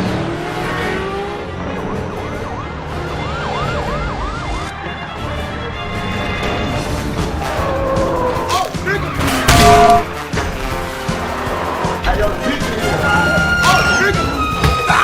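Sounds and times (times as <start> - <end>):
vehicle noise: 0.0 - 15.0
siren wailing: 1.3 - 5.2.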